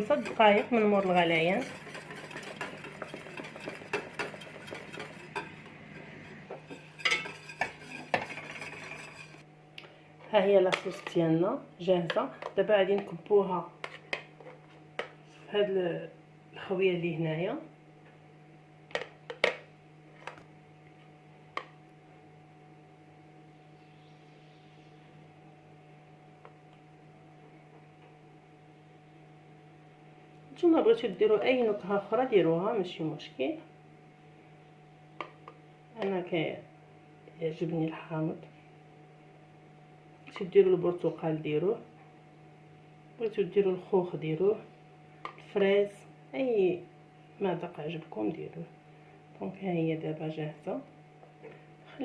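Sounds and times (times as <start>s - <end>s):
utensil scraping and tapping pan: 0.0s - 9.4s
utensil stirring in a saucepan: 0.0s - 9.4s
low electrical hum: 0.0s - 52.0s.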